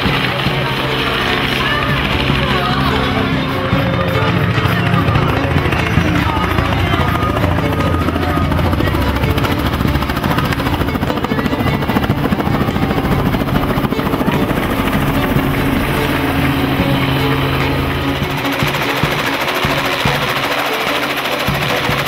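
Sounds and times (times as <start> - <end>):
helicopter engine hum: 0.0 - 22.0
helicopter rotor chopping: 0.0 - 22.0.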